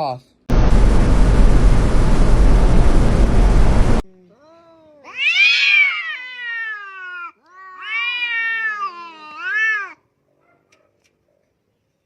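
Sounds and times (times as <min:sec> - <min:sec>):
cat yowling: 0:04.5 - 0:10.0.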